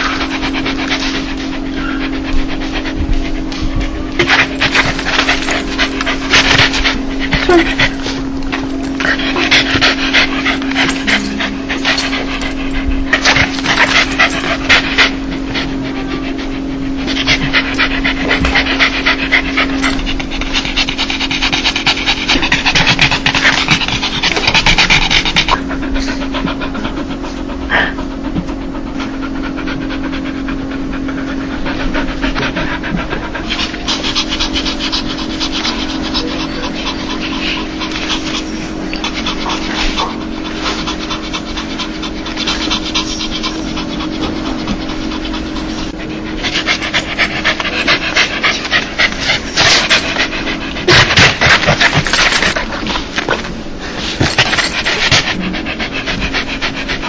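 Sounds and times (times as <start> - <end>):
dog panting: 0.0 - 57.0.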